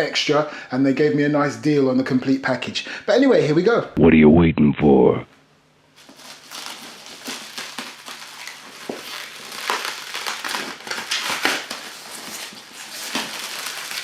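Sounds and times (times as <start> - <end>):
plastic shrink wrap crinkling: 6.0 - 14.0.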